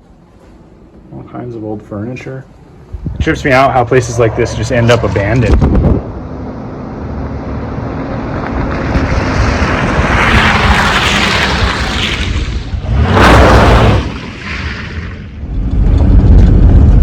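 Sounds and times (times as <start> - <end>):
wind buffeting microphone: 2.7 - 6.5, 8.4 - 17.0.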